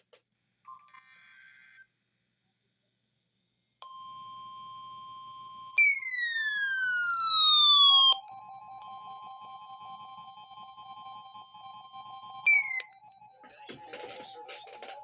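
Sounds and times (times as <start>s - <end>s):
steady high alarm tone: 3.8s - 15.0s.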